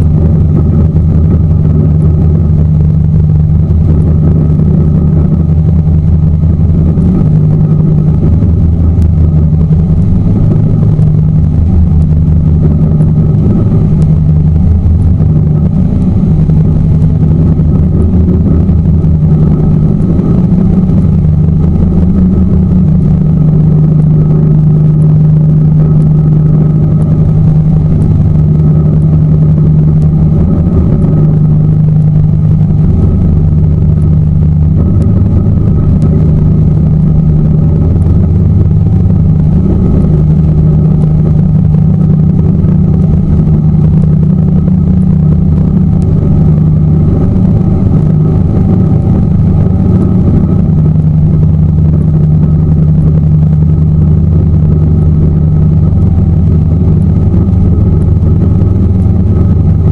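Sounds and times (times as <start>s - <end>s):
boat motor droning: 0.0s - 59.9s.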